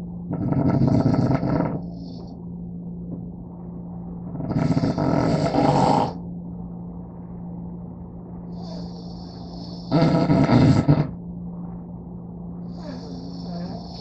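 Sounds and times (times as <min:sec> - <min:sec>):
person snoring: 0:00.3 - 0:02.1, 0:04.4 - 0:06.2, 0:08.6 - 0:11.2.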